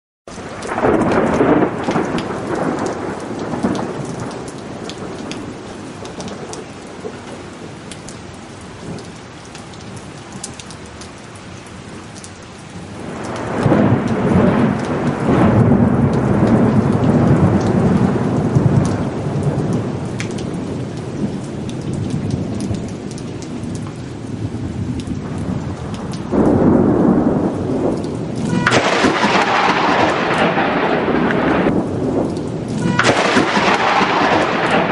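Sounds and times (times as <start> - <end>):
thunder rumbling: 0.3 - 7.8, 13.0 - 34.9
heavy rain: 0.3 - 34.9
sharp thunderclap: 0.4 - 7.2, 13.0 - 21.3, 24.4 - 34.9.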